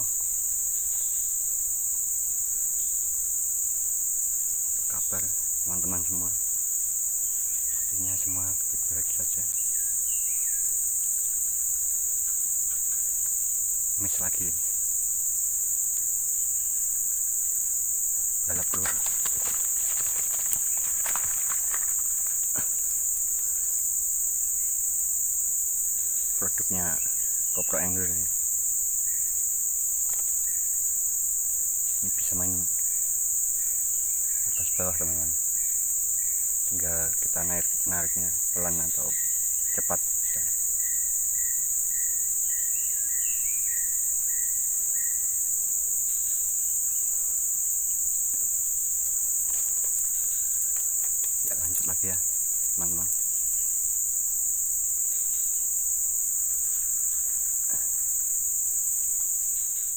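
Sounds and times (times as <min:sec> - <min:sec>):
insects shrilling: 0:00.0 - 0:59.9
faint clicks: 0:18.5 - 0:23.1.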